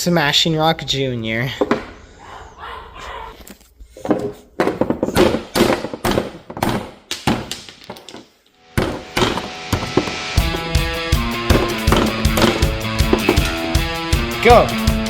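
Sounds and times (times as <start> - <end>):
rock knocking on plastic: 11.5 - 13.6.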